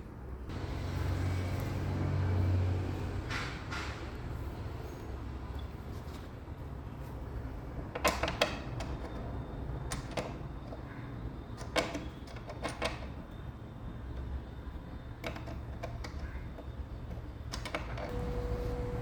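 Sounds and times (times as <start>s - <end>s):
low steady hum: 18.0s - 19.0s.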